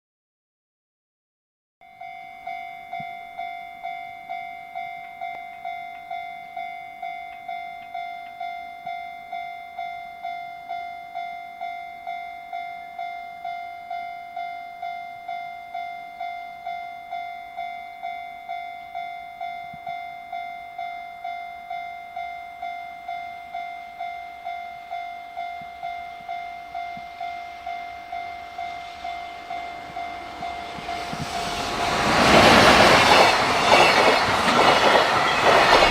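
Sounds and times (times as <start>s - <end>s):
approaching train: 21.2s - 35.9s.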